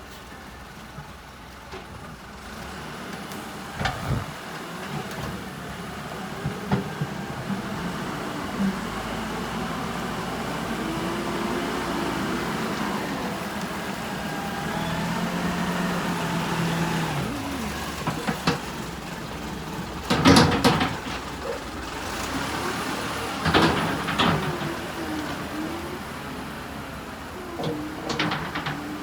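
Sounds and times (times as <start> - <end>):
loader engine running: 0.0 - 29.0.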